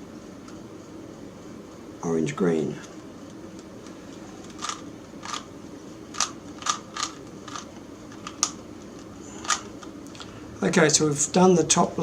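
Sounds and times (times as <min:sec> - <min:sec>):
plastic cube twisting clicks: 0:04.4 - 0:05.4, 0:06.1 - 0:08.6.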